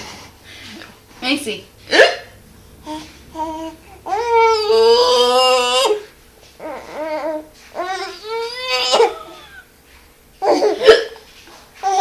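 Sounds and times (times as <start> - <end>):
woman hiccuping: 1.9 - 2.3, 10.8 - 11.2
baby babbling and squealing: 2.8 - 9.4.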